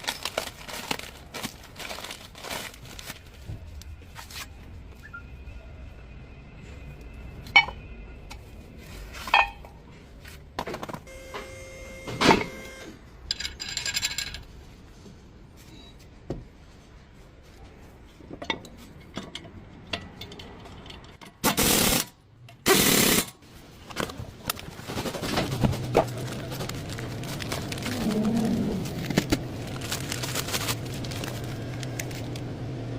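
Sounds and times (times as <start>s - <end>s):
metal tools clinking: 13.2s - 14.5s.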